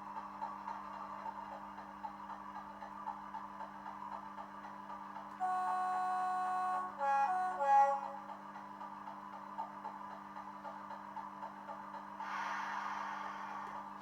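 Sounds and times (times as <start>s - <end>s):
locomotive horn blasts: 5.4s - 8.3s.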